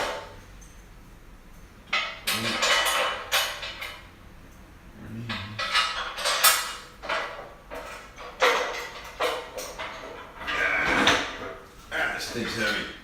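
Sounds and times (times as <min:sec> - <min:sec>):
steel parts clanking and rattling: 0:01.9 - 0:04.1, 0:05.3 - 0:12.9.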